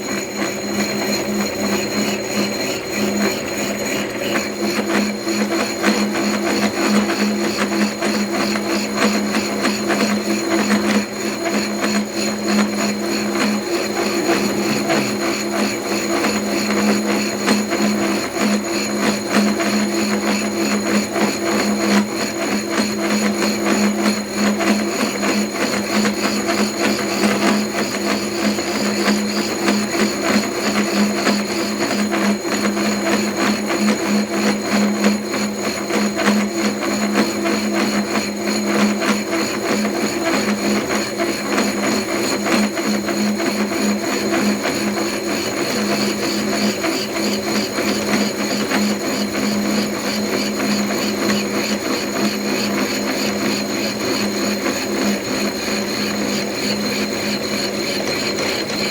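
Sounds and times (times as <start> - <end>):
milling machine cutting metal: 0.0 - 58.9.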